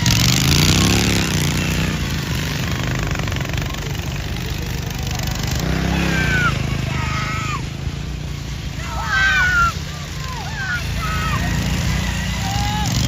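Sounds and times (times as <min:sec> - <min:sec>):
drone of engines: 0:00.0 - 0:13.0
racing lawnmower passing: 0:00.0 - 0:13.0.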